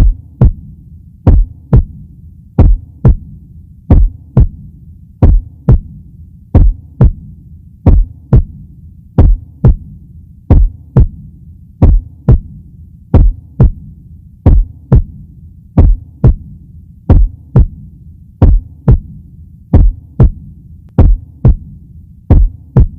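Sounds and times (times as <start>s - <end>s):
heartbeat double thump: 0.0s - 0.6s, 1.3s - 2.0s, 2.6s - 3.3s, 3.9s - 4.6s, 5.2s - 5.9s, 6.6s - 7.2s, 7.9s - 8.6s, 9.2s - 9.8s, 10.5s - 11.2s, 11.8s - 12.5s, 13.2s - 13.8s, 14.5s - 15.2s, 15.8s - 16.5s, 17.1s - 17.8s, 18.4s - 19.1s, 19.7s - 20.4s, 21.0s - 21.7s, 22.3s - 22.9s
low hum: 0.0s - 22.9s.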